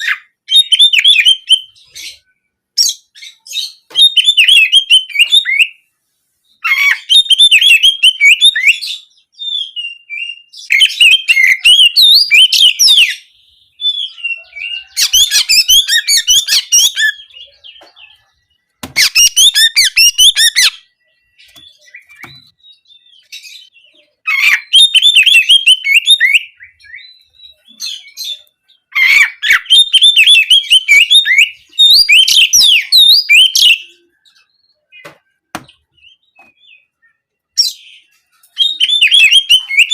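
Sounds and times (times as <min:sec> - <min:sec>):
bird twittering and trilling: 0:00.0 - 0:39.9.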